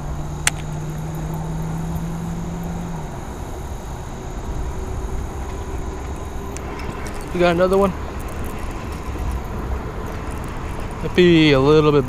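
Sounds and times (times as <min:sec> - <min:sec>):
steady low hum: 0:00.0 - 0:12.0
wind rumbling on microphone: 0:00.0 - 0:12.0
sharp click: 0:00.4 - 0:00.7.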